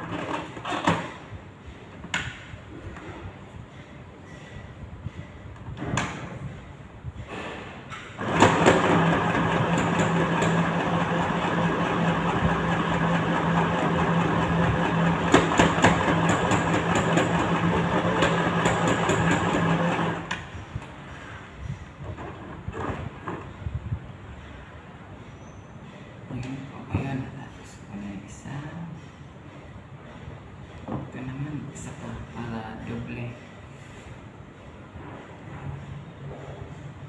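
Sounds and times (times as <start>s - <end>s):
sewing machine running: 8.2s - 20.3s.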